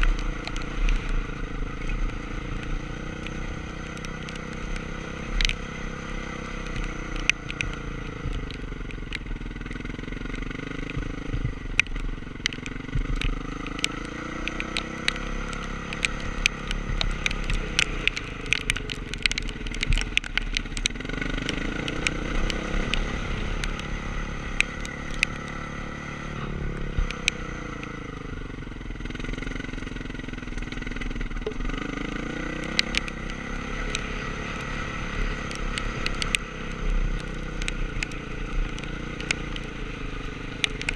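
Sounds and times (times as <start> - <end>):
sharp clicks and clatter: 0.0 - 28.1, 29.0 - 40.9
motorcycle engine revving: 0.0 - 40.9.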